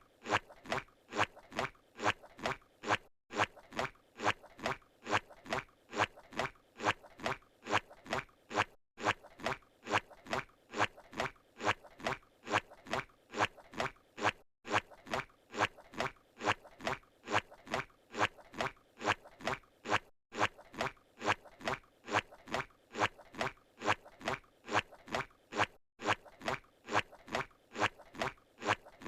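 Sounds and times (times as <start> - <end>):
cartoon footsteps: 0.2 - 29.0.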